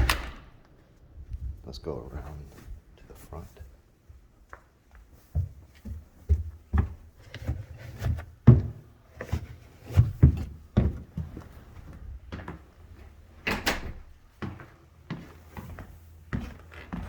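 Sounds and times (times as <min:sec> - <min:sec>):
footsteps and handling knocks: 0:04.1 - 0:17.0.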